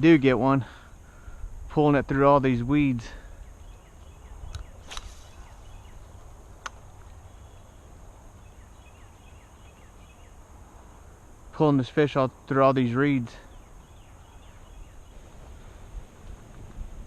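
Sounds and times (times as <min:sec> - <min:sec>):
sharp clicks: 0:04.0 - 0:05.5, 0:06.6 - 0:07.2.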